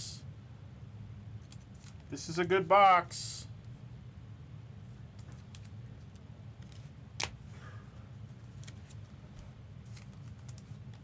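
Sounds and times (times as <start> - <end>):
steady low hum: 0.0 - 11.0
trading cards rustling and clicking: 9.8 - 11.0.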